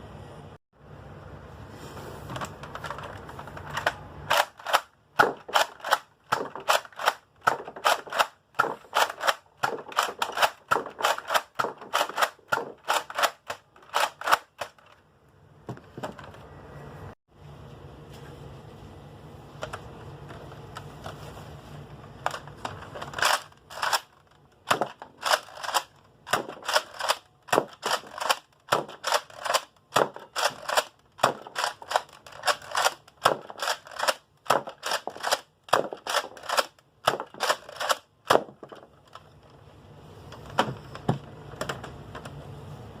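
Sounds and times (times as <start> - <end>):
low steady hum: 0.0 - 43.0
foam dart blaster clacks and pops: 4.3 - 14.8, 24.7 - 38.9.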